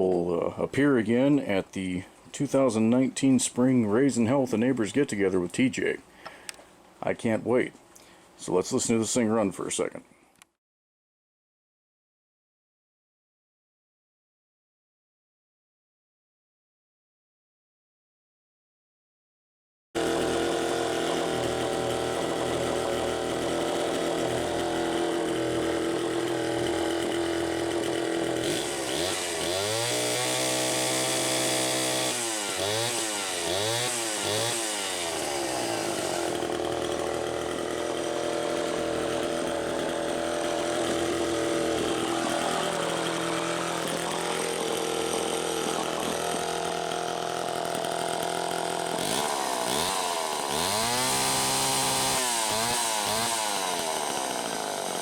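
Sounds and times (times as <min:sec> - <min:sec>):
chainsaw idling and revving: 0:20.0 - 0:55.0.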